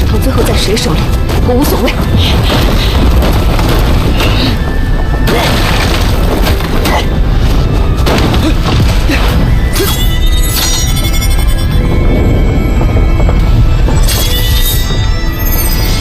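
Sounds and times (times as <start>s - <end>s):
booming and crashing impacts: 1.1s - 9.8s, 11.4s - 16.0s
low rumble: 11.3s - 16.0s.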